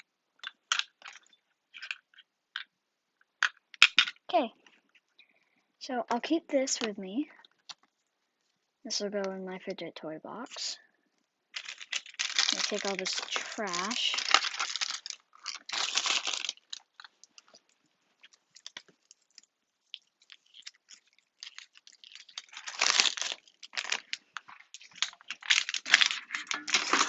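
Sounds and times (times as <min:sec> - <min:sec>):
plastic packaging crinkling: 0:11.5 - 0:27.0.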